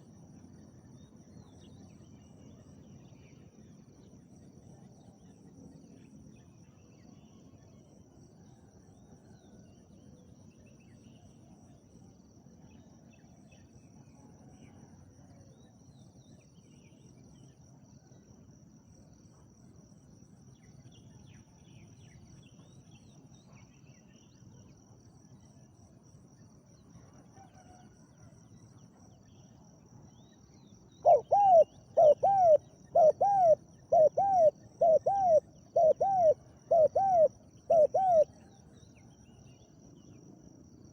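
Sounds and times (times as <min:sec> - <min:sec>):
insect whine: 0:26.4 - 0:40.9
distant bird chirps: 0:31.0 - 0:38.3
dove cooing: 0:31.0 - 0:38.4.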